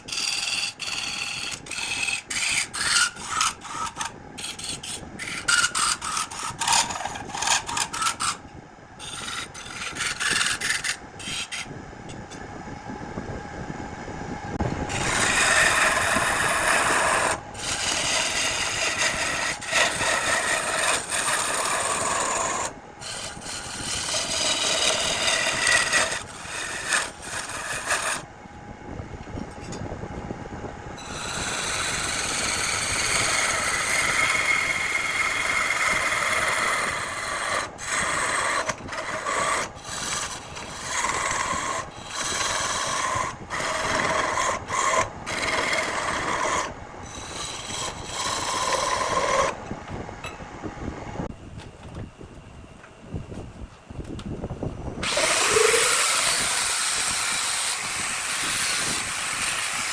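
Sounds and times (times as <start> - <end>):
wood lathe tool cutting wood: 0.0 - 8.3, 14.9 - 28.3, 31.0 - 49.6, 55.0 - 59.9.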